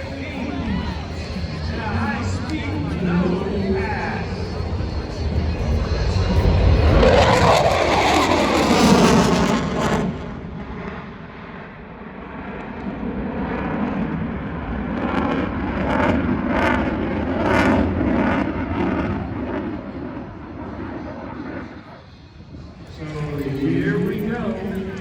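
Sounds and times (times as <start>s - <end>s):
airplane flying past: 0.0s - 25.0s.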